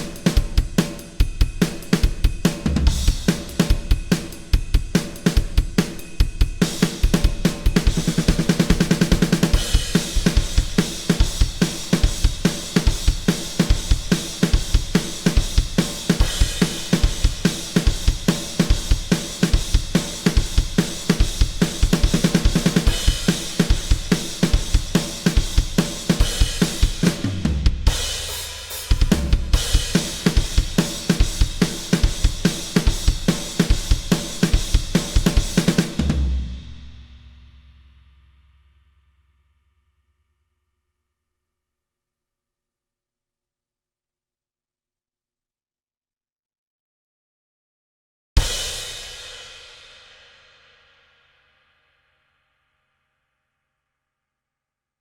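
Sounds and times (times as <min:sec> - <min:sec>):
drum kit beat: 0:00.0 - 0:37.2.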